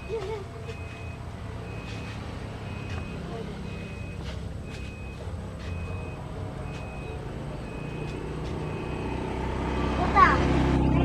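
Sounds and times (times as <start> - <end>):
reversing alarm beeps: 0.0 - 9.3
bus engine rumbling: 0.0 - 11.0.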